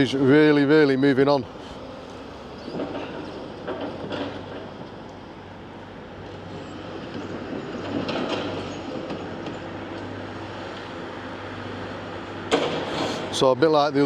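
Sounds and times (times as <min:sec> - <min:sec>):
diesel engine running: 0:00.0 - 0:14.0
rubble and metal clattering: 0:02.6 - 0:05.0, 0:07.1 - 0:10.7, 0:12.4 - 0:13.4.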